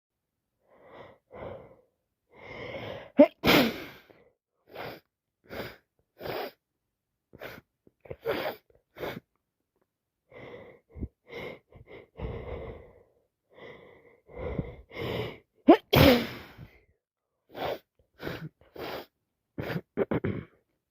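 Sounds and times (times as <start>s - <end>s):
woman sneezing: 3.2s - 4.0s, 15.7s - 16.6s.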